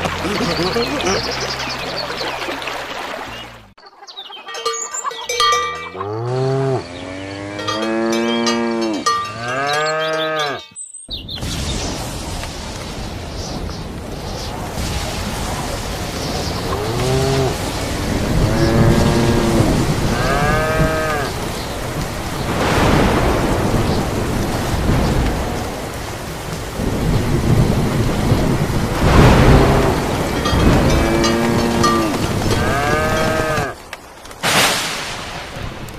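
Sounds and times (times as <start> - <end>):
cattle mooing: 5.9 - 10.6, 16.7 - 21.4, 29.4 - 33.8
rushing rumbling noise surges: 11.4 - 33.2.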